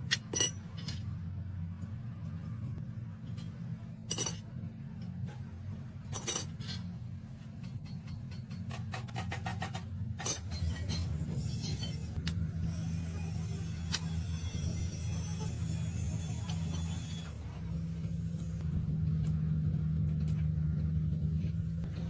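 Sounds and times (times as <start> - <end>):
metal parts clinking and knocking: 0.0 - 1.1, 3.2 - 4.4, 6.1 - 6.9, 7.6 - 12.3
steady low hum: 0.0 - 22.0.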